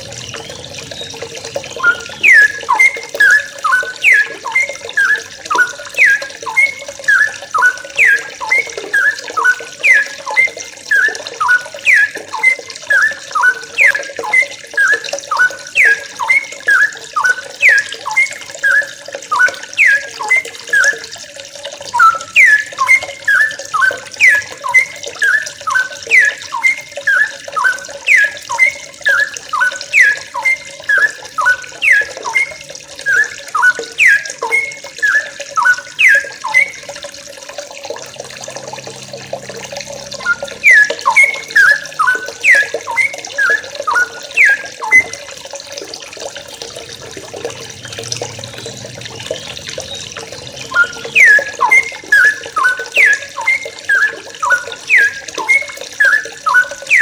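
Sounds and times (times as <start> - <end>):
birds chattering: 0.0 - 14.4, 47.2 - 55.6.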